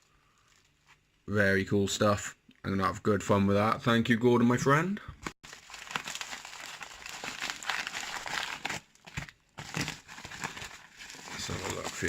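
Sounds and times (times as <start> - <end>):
packaging crinkling: 5.4 - 12.0.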